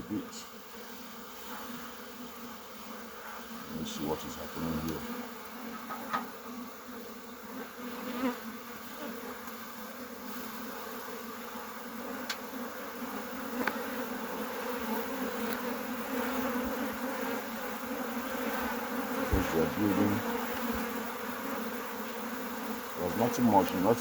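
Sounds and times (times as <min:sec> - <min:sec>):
honey bees buzzing: 0:00.0 - 0:24.0
faint sharp clicks: 0:23.6 - 0:23.8.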